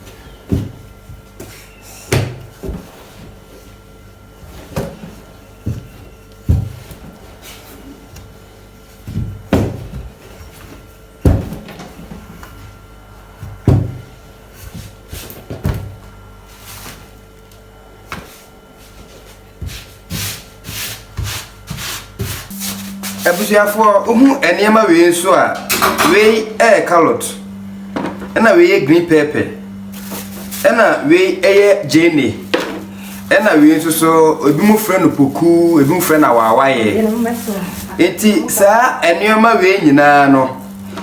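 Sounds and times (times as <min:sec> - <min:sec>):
faint steady hum: 0:22.2 - 0:41.0.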